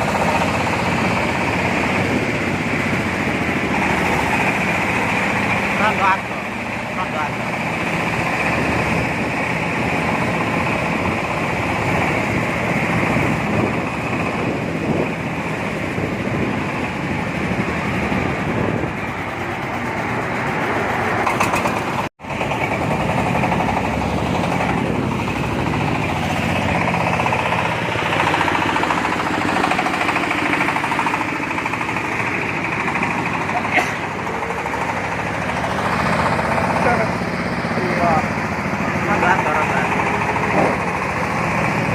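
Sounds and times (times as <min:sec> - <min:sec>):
diesel engine running: 0:00.0 - 0:41.9
corn sheller pounding: 0:21.2 - 0:41.9.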